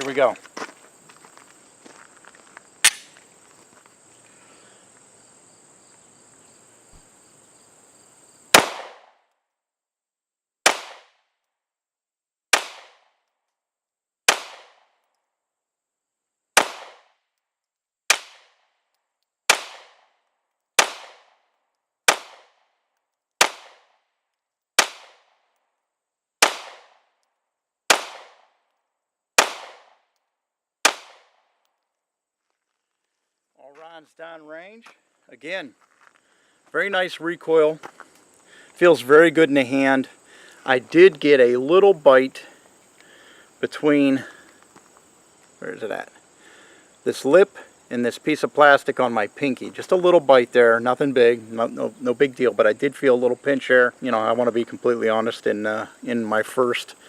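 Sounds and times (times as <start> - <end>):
pistol shots: 2.8 - 3.1, 8.5 - 9.2, 10.6 - 11.2, 12.5 - 13.2, 14.3 - 14.9, 16.6 - 17.2, 18.1 - 18.6, 19.5 - 20.1, 20.8 - 21.4, 22.1 - 22.6, 23.4 - 24.0, 24.8 - 25.3, 26.4 - 27.1, 27.9 - 28.6, 29.4 - 30.0, 30.8 - 31.4.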